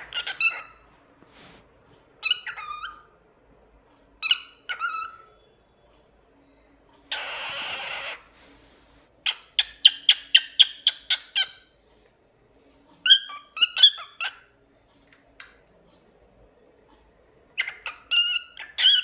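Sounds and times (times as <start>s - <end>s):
cockatiel sharp chirps: 7.1s - 8.2s
cockatiel whistling: 7.1s - 8.2s
cockatiel harsh call: 7.1s - 8.3s.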